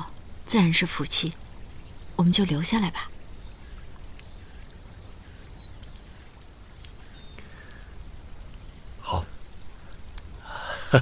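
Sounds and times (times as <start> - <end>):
faint high chirps: 0.0 - 11.0
soft clicks: 3.6 - 8.7, 9.5 - 10.3.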